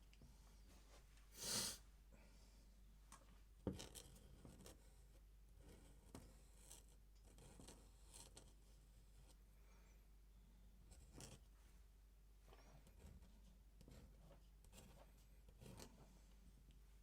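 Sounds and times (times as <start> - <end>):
pen scratching on paper: 3.7 - 9.4, 10.9 - 11.5, 12.8 - 16.0.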